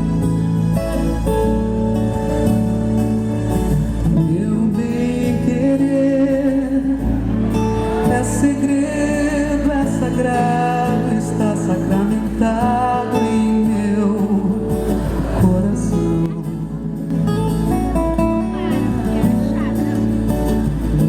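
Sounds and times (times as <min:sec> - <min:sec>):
acoustic guitar: 0:00.0 - 0:21.0
person singing: 0:04.1 - 0:16.8.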